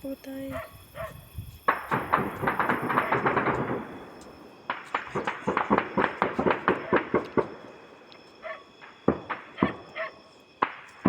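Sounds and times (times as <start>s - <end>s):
rapid rifle fire: 1.7s - 7.6s.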